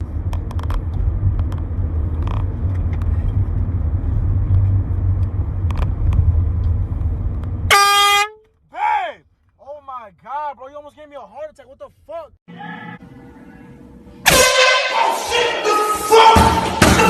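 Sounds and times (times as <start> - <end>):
steady low rumble: 0.0 - 7.7
air horn blast: 7.7 - 8.5, 14.2 - 17.0.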